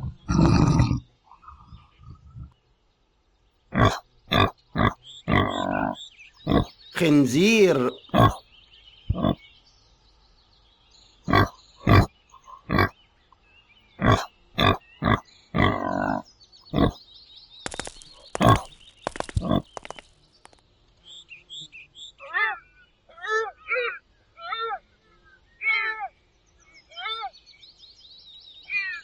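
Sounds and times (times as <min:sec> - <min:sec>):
pig grunting: 0:00.0 - 0:01.0, 0:03.8 - 0:08.4, 0:09.1 - 0:09.4, 0:11.3 - 0:12.1, 0:12.7 - 0:12.9, 0:14.0 - 0:16.2, 0:16.8 - 0:17.0, 0:18.4 - 0:18.7, 0:19.4 - 0:19.6.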